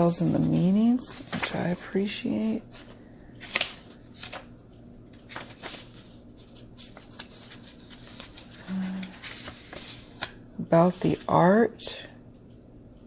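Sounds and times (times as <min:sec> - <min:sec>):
paper pages rustling and flicking: 0:00.0 - 0:10.4.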